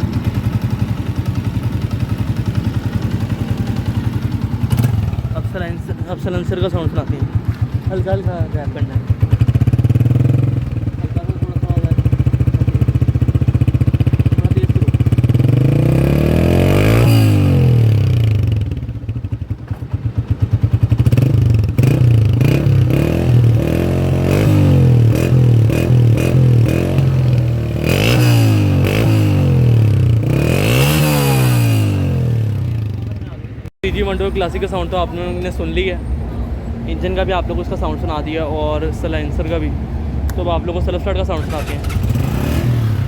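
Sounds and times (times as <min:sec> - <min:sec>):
motorcycle engine idling and revving: 0:00.0 - 0:43.0.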